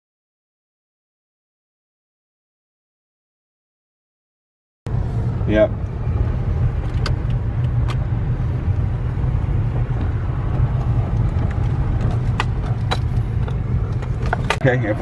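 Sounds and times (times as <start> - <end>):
car cabin road rumble: 4.9 - 15.0.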